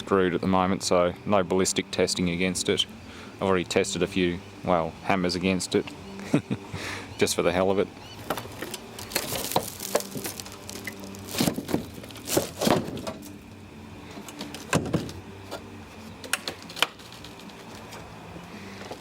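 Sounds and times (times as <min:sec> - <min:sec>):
knocks and thuds: 0:11.3 - 0:13.3, 0:14.7 - 0:15.2.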